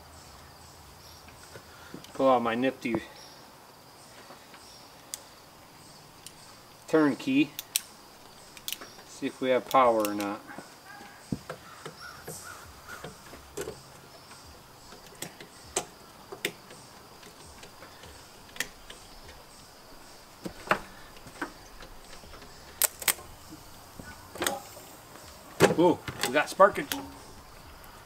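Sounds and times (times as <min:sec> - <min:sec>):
ignition clicks and snaps: 0:20.4 - 0:23.4.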